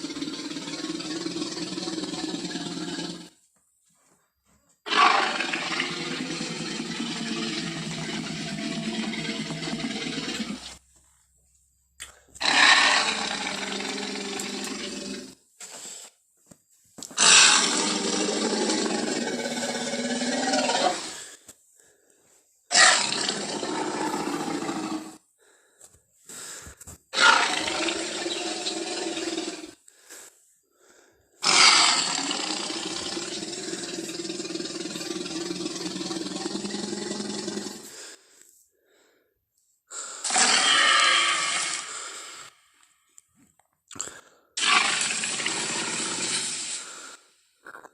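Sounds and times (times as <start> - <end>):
dinosaur roar: 0.0 - 3.4, 4.9 - 10.8, 12.4 - 15.4, 17.2 - 21.4, 22.7 - 25.2, 27.1 - 29.8, 31.4 - 38.0, 40.2 - 42.5, 44.6 - 47.2.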